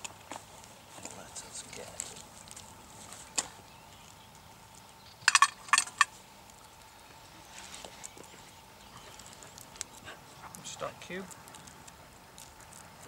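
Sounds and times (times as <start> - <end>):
small hard objects clinking: 5.2 - 6.2.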